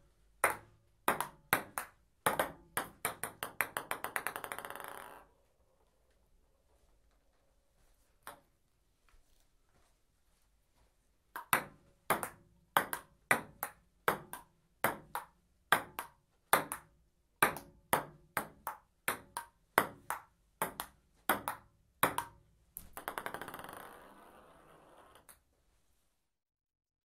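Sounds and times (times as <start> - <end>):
ping-pong ball clicking: 0.4 - 5.3, 11.4 - 24.4.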